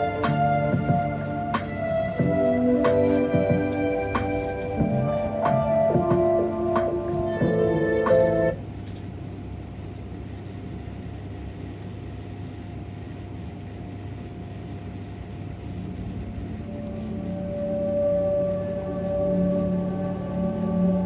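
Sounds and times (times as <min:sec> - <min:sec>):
low hum and hiss: 0:00.0 - 0:21.0
faint held tone: 0:16.4 - 0:21.0.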